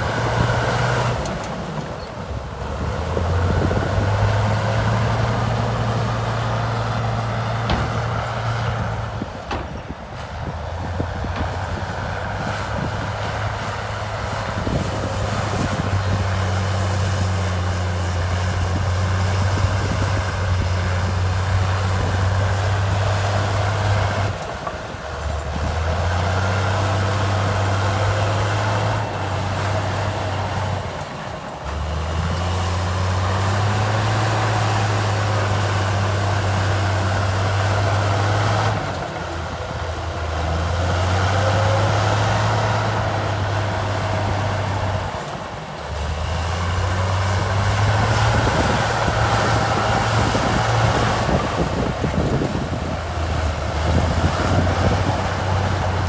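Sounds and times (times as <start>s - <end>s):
heavy diesel engine working: 0.0s - 56.0s.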